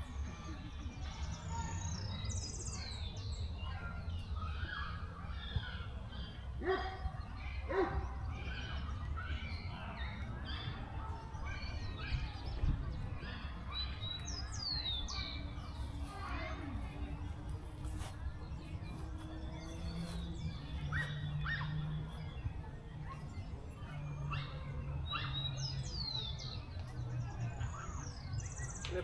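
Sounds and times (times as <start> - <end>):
birds chirping and whistling: 0.6 - 29.0
dog barking: 6.6 - 7.1, 7.7 - 8.2.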